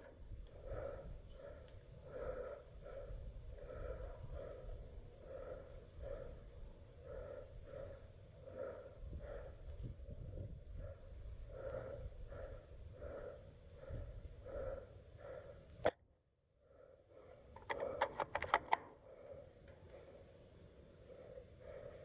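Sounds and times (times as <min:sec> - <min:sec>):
person breathing heavily: 0:00.0 - 0:16.0, 0:16.6 - 0:22.0
sharp clicks: 0:17.6 - 0:18.9.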